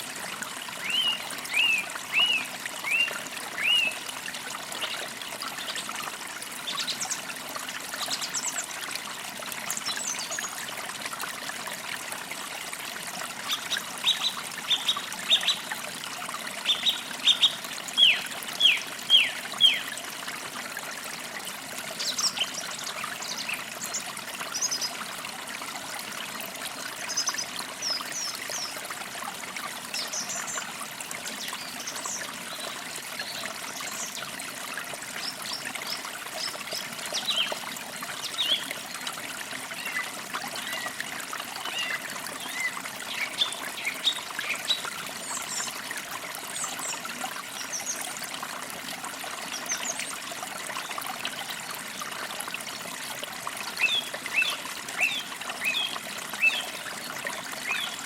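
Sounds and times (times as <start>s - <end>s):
creek trickling: 0.0s - 58.0s.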